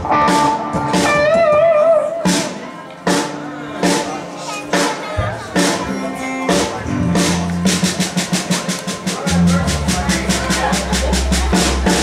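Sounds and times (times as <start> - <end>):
drum kit beating: 0.0 - 12.0
live band playing: 0.0 - 12.0
sustained bass notes: 5.2 - 8.3, 9.3 - 12.0.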